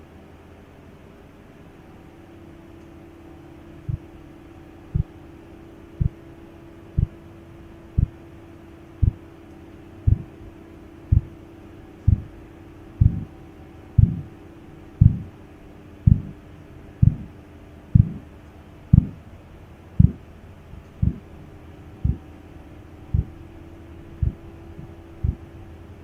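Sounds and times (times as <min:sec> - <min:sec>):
steady low hum: 0:00.0 - 0:26.0
pulse thumps through stethoscope: 0:03.9 - 0:04.1, 0:06.0 - 0:06.2, 0:07.0 - 0:07.2, 0:08.0 - 0:08.2, 0:09.0 - 0:09.2, 0:10.1 - 0:10.3, 0:11.1 - 0:11.3, 0:12.1 - 0:12.3, 0:13.0 - 0:13.3, 0:14.0 - 0:14.3, 0:15.0 - 0:15.3, 0:16.1 - 0:16.3, 0:17.0 - 0:17.3, 0:18.0 - 0:18.2, 0:19.0 - 0:19.2, 0:20.0 - 0:20.2, 0:21.0 - 0:21.2, 0:22.0 - 0:22.3, 0:23.1 - 0:23.4, 0:24.2 - 0:24.4, 0:25.2 - 0:25.5.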